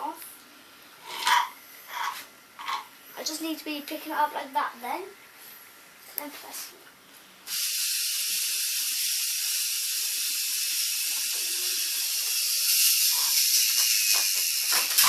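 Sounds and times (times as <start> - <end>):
small motor whirring: 7.5 - 15.0.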